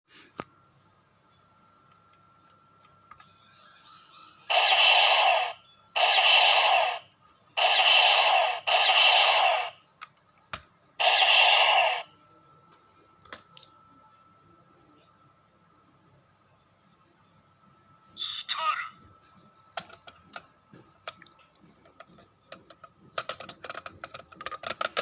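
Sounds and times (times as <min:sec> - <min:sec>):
toy gun electronic firing effect: 0:04.5 - 0:09.8, 0:11.0 - 0:12.1.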